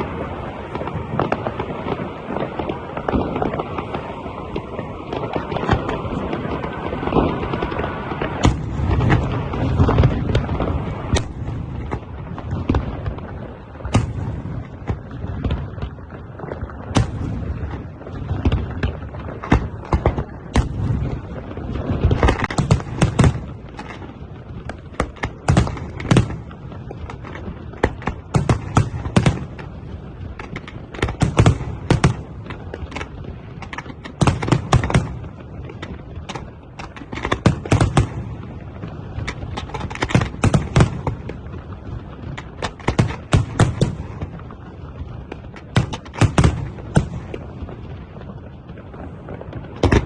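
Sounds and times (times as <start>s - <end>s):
fireworks bursting with sharp bangs: 0.0s - 50.0s.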